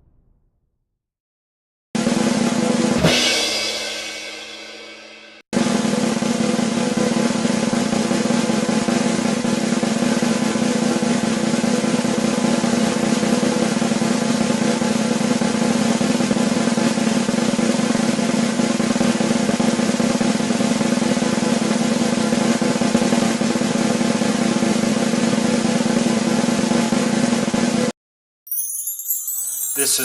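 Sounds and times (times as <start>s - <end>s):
drum roll: 2.0s - 13.9s.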